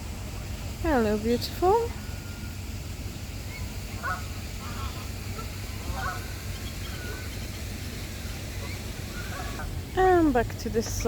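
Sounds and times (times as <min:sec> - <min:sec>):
low background rumble: 0:00.0 - 0:11.0
geese honking: 0:01.1 - 0:09.9.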